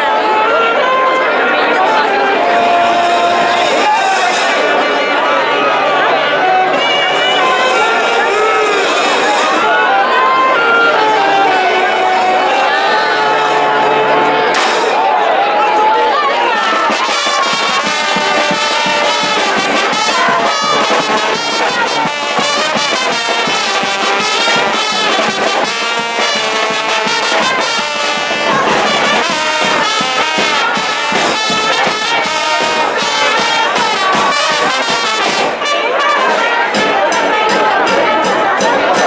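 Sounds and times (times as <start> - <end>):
brass band playing: 0.0 - 39.0
steady drum beat: 16.5 - 39.0.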